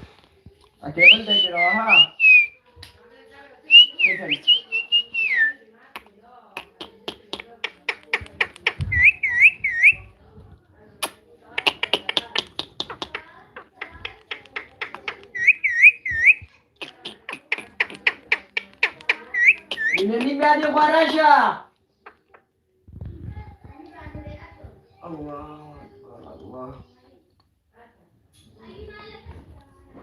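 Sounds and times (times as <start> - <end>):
parrot clicking: 5.9 - 9.9, 11.0 - 20.4.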